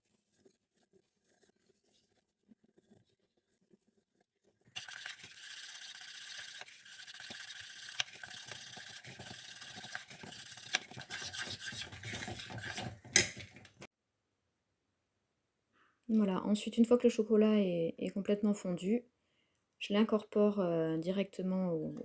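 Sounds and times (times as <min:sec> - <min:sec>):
utensil scraping bowl: 0:04.8 - 0:13.9.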